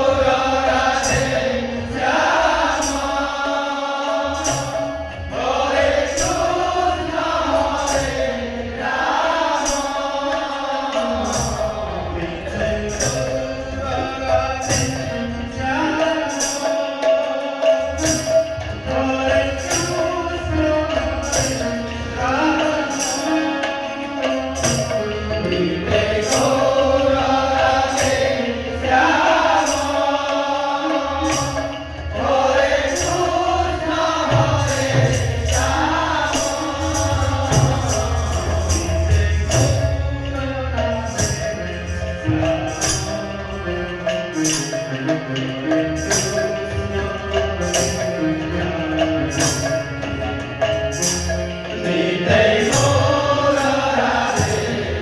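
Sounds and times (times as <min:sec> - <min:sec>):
drums beating: 0:00.0 - 0:44.4, 0:45.0 - 0:55.0
voices singing a melody: 0:00.0 - 0:55.0
small metal cymbals: 0:12.5 - 0:55.0.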